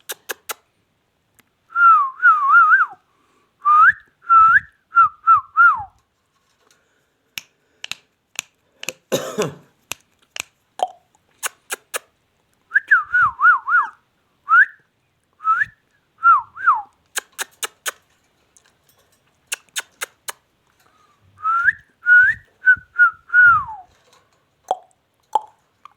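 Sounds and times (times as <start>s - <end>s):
sharp clicks: 0.0s - 0.6s, 7.4s - 9.1s, 9.9s - 12.1s, 17.0s - 18.1s, 19.5s - 20.4s.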